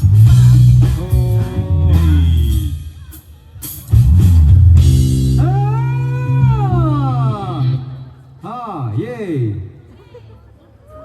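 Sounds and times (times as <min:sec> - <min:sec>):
rock band playing: 0:00.0 - 0:08.0.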